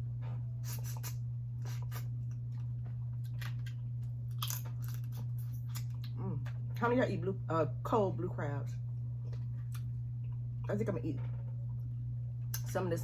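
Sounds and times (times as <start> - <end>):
steady low hum: 0.0 - 13.0
chewing and crunching: 0.6 - 6.7.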